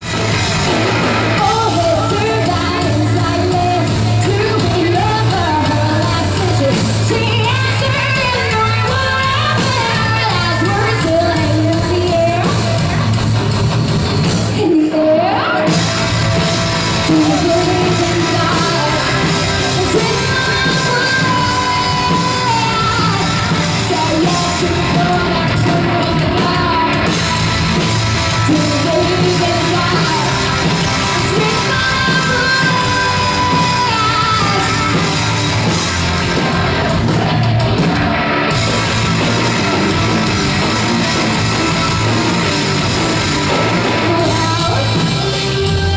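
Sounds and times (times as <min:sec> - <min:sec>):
heavy rock band playing: 0:00.0 - 0:45.9
woman singing and screaming: 0:01.4 - 0:12.8, 0:14.5 - 0:15.8, 0:17.1 - 0:27.1, 0:31.2 - 0:35.4.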